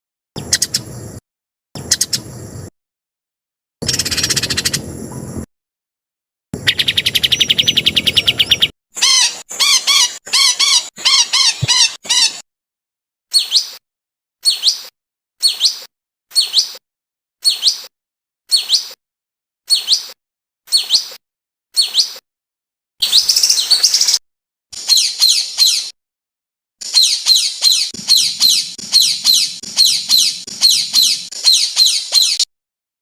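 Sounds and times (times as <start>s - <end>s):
songbird trill: 0.4s - 1.0s, 1.8s - 2.4s, 3.8s - 5.2s, 6.6s - 12.4s, 13.3s - 13.8s, 14.4s - 16.8s, 17.4s - 17.9s, 19.7s - 21.2s, 21.8s - 22.2s, 23.0s - 24.2s, 24.8s - 25.9s, 26.8s - 32.5s
sharp bird call: 6.6s - 12.4s, 26.8s - 32.5s
short looping chirps: 27.4s - 31.3s.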